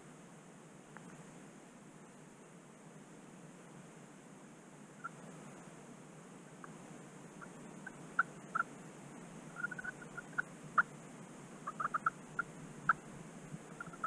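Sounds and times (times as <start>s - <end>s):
turkey calling: 7.4s - 8.8s, 9.5s - 10.9s, 11.6s - 13.0s, 13.7s - 14.0s.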